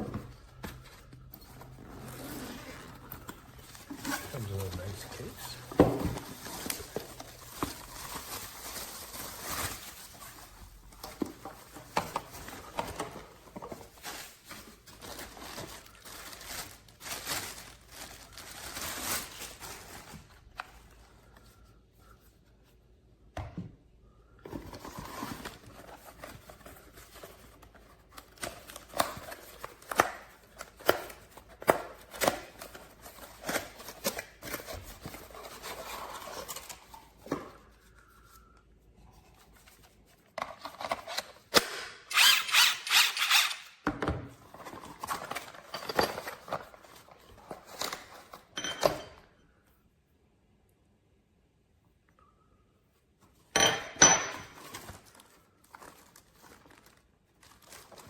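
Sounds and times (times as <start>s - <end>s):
packaging rustling and tearing: 0.3s - 21.4s, 24.5s - 38.2s, 54.6s - 58.0s.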